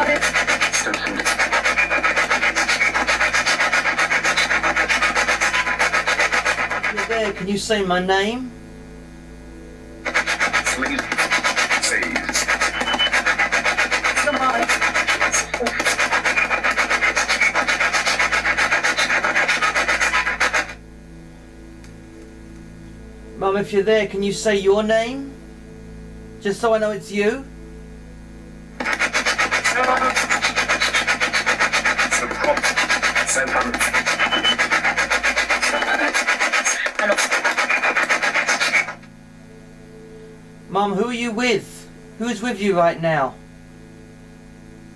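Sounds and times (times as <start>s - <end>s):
choppy bursts of radio static: 0.0s - 7.8s, 10.0s - 20.8s, 28.8s - 39.2s.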